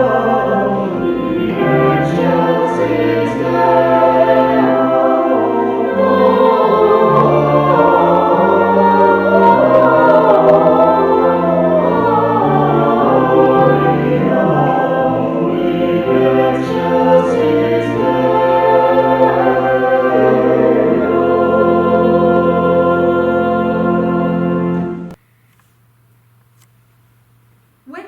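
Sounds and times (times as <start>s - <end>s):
choir singing held chords: 0.0s - 25.2s.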